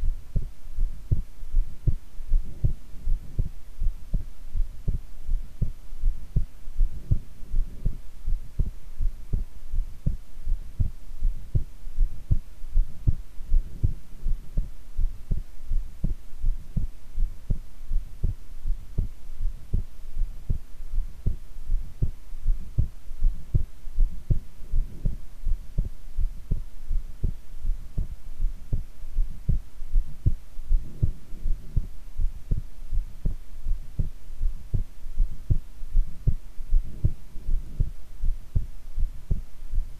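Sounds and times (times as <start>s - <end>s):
faint steady hum: 0.0s - 39.9s
heartbeat thumps: 0.0s - 39.9s.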